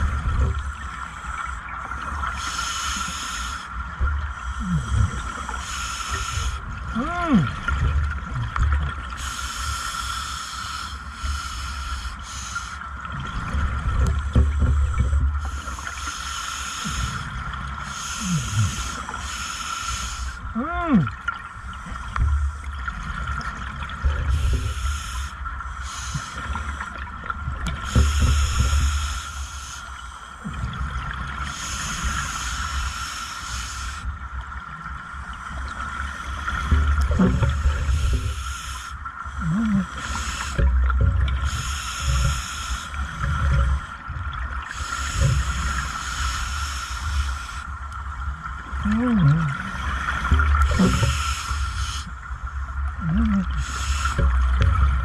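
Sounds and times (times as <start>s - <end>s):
regulator air hiss: 0.6s - 6.7s, 9.2s - 13.0s, 14.8s - 20.5s, 24.3s - 27.0s, 27.8s - 30.4s, 31.4s - 34.2s, 37.8s - 44.0s, 44.7s - 47.8s, 50.9s - 52.3s, 53.4s - 54.5s
exhaled bubbles: 3.4s - 9.3s, 20.5s - 25.2s, 36.5s - 47.6s, 48.6s - 52.2s, 52.8s - 55.0s.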